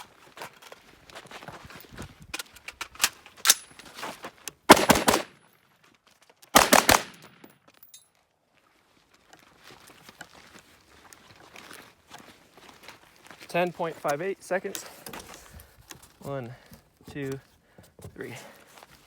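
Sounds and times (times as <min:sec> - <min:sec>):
rifle shots: 0:04.7 - 0:05.4, 0:06.6 - 0:07.5.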